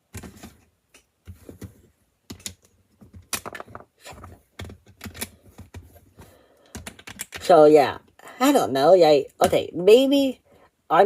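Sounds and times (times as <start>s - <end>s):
plastic bricks clicking: 2.3s - 5.8s, 6.6s - 7.4s.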